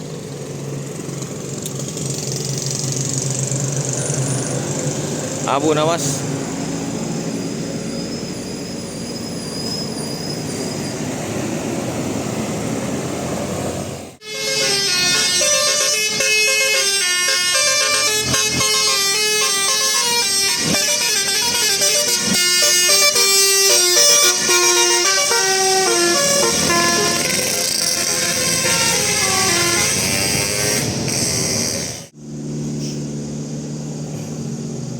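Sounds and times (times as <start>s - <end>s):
traffic and engine noise: 0.0s - 34.9s
musical air horn melody: 14.2s - 32.1s.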